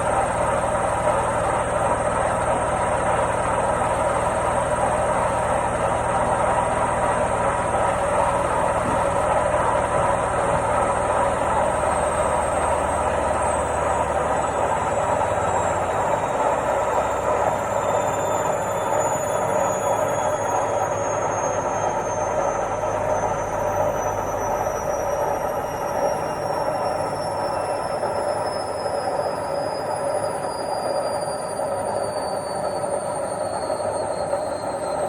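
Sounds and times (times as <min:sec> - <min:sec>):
washing machine spinning: 0:00.0 - 0:35.0.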